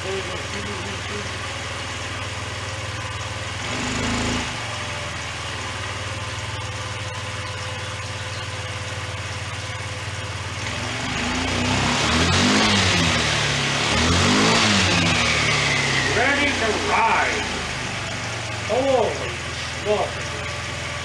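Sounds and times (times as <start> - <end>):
engine revving: 0.0 - 21.0
scooter engine idling: 0.0 - 21.0.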